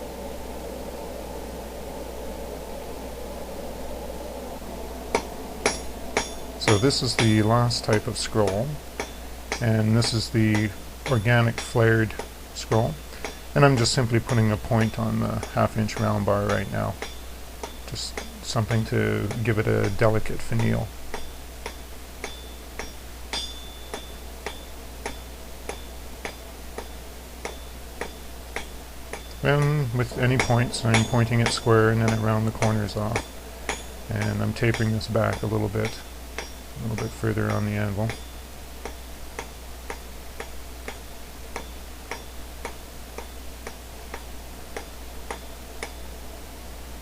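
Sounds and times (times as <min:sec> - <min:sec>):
hammer striking steel on anvil: 0:05.1 - 0:46.1.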